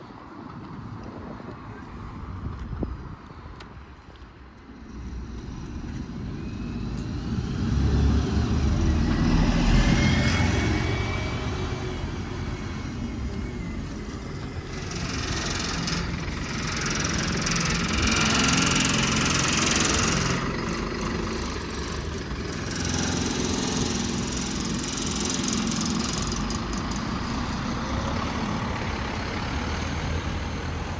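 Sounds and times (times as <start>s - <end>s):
diesel buses passing: 0.0s - 30.9s.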